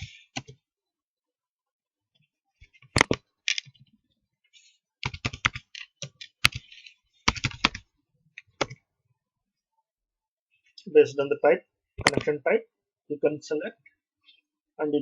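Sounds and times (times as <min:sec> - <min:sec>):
keyboard typing: 0:05.0 - 0:08.8.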